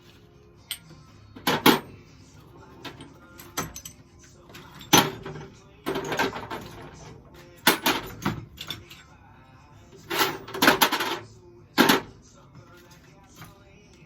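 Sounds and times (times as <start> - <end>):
small hardware parts clanking: 0.6 - 9.2, 10.0 - 12.2.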